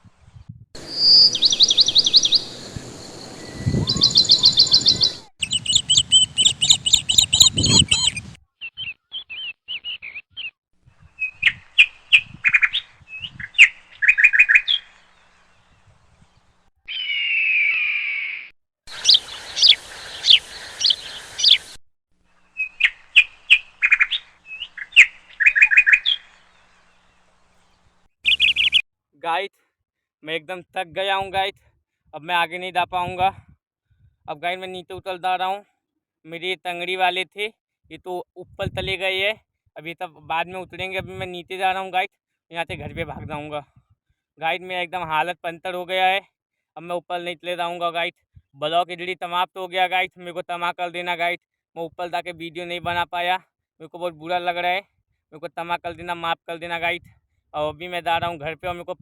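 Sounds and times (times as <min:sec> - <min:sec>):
falling sweeping bird calls: 0:00.8 - 0:10.5, 0:11.2 - 0:15.8, 0:16.9 - 0:21.8, 0:22.4 - 0:28.8
songbirds chirping and trilling: 0:00.8 - 0:21.8, 0:22.4 - 0:28.8.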